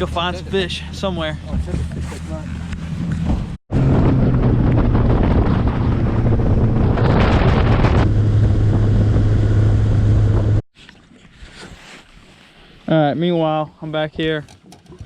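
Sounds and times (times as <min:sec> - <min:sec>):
wind noise on microphone: 0:01.6 - 0:10.6.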